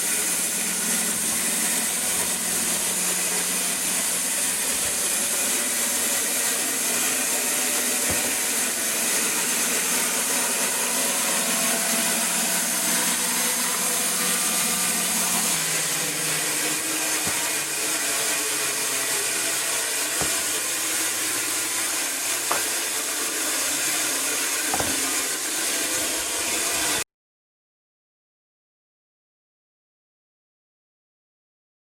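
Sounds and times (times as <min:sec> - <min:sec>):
band resaw running: 0:00.0 - 0:27.0
light knocks: 0:24.8 - 0:25.1.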